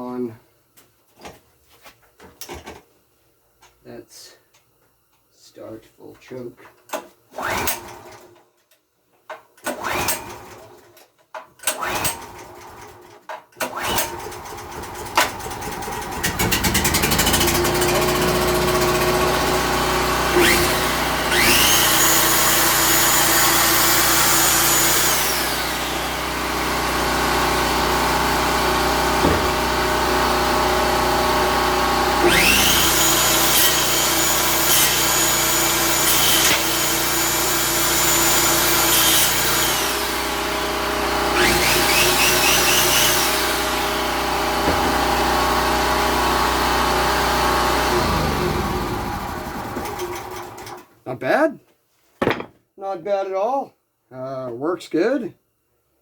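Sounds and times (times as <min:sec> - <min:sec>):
generator engine cranking and running: 0:11.8 - 0:38.8, 0:39.8 - 0:50.9
circular saw whining: 0:14.4 - 0:30.3, 0:32.2 - 0:40.6, 0:41.2 - 0:46.6.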